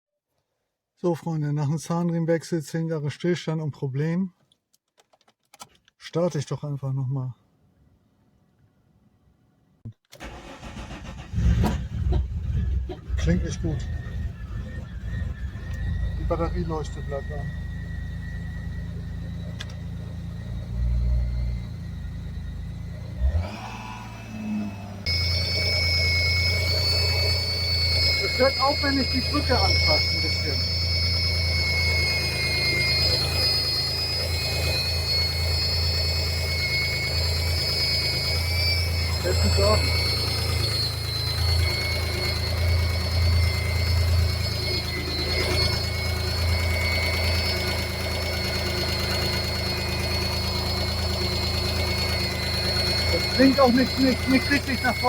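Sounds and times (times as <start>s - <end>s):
car engine idling: 10.2s - 55.0s
faint high whine: 13.0s - 55.0s.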